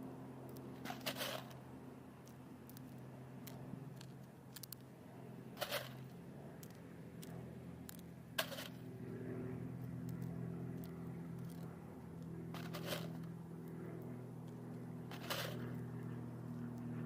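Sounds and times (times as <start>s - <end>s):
steady low hum: 0.0s - 17.0s
short gritty rattles: 0.8s - 1.5s, 15.1s - 15.6s.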